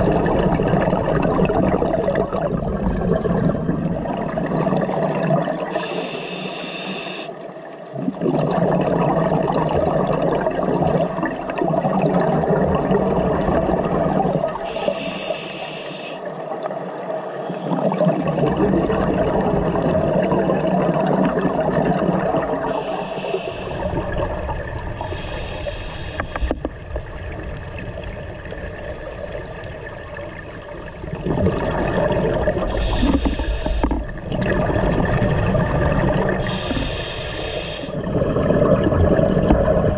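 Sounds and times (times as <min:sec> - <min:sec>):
bubbling exhaust underwater: 0:00.0 - 0:39.9
regulator hissing inhalations: 0:05.7 - 0:07.4, 0:14.6 - 0:16.3, 0:22.7 - 0:24.0, 0:25.0 - 0:26.6, 0:32.7 - 0:33.9, 0:36.4 - 0:38.0.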